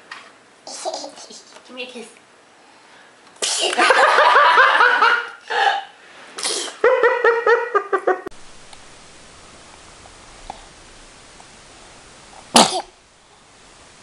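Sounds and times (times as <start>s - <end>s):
baby giggling: 0.7s - 1.6s.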